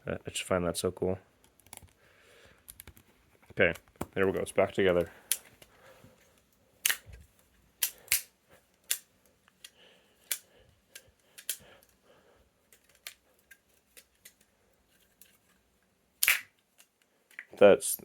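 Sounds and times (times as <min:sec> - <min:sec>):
plastic clicks and clacks: 0:09.6 - 0:11.9.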